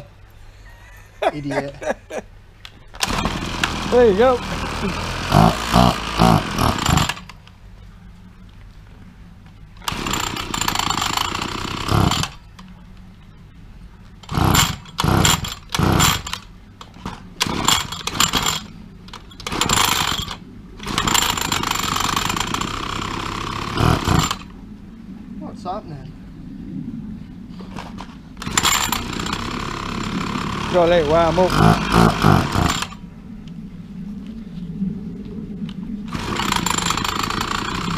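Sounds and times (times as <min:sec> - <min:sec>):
strimmer engine revving and idling: 0:03.0 - 0:07.3, 0:09.8 - 0:12.4, 0:14.2 - 0:16.4, 0:19.4 - 0:24.5, 0:28.4 - 0:33.0, 0:36.1 - 0:37.9.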